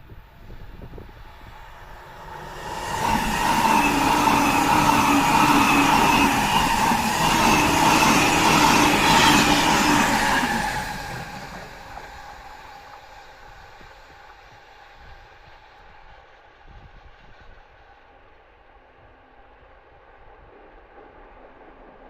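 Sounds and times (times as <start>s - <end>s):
electric train passing at speed: 0.0s - 22.0s.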